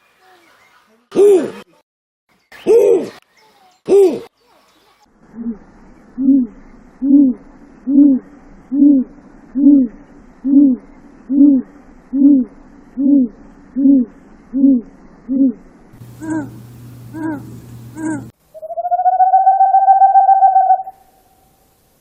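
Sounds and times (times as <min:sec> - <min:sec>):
bird hooting: 0:06.2 - 0:21.5.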